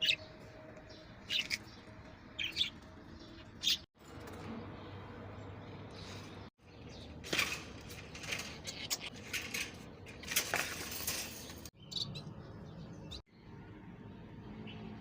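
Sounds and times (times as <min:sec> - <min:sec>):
clinks rattles and scraping of cage: 0:04.0 - 0:05.1, 0:06.7 - 0:11.8.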